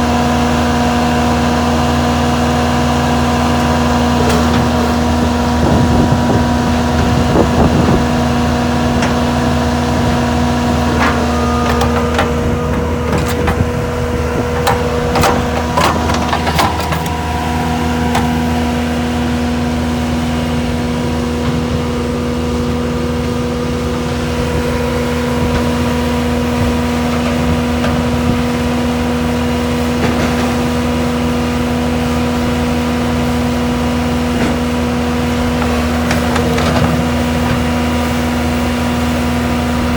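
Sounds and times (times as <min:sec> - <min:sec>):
diesel engine running: 0:00.0 - 0:39.9
knocks and rattles: 0:11.0 - 0:17.4.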